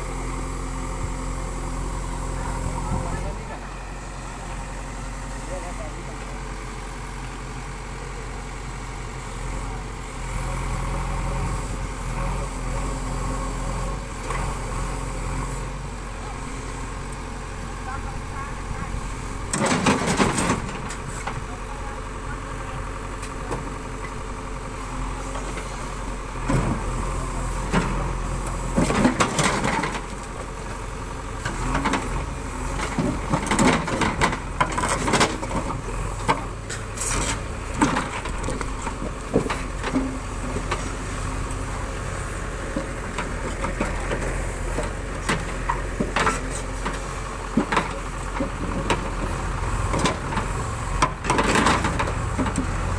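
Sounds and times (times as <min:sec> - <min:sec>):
diesel engine running: 0:00.0 - 0:52.9
loud bursts of digging noise: 0:24.9 - 0:52.9.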